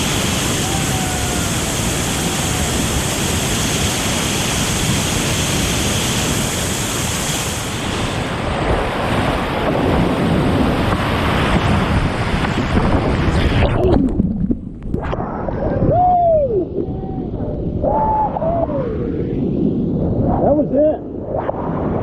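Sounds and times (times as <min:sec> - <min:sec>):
whitewater rushing on a rapid: 0:00.0 - 0:13.9.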